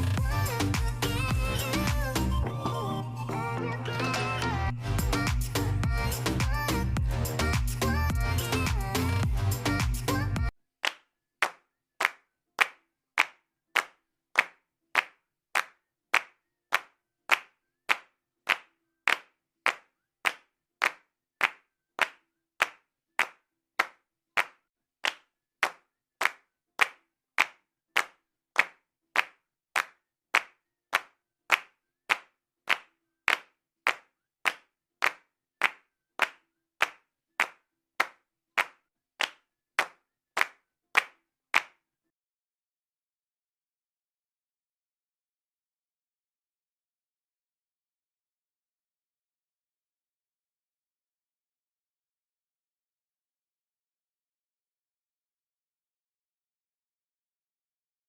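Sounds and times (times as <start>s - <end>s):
hand claps: 0.0s - 2.6s, 5.1s - 41.8s.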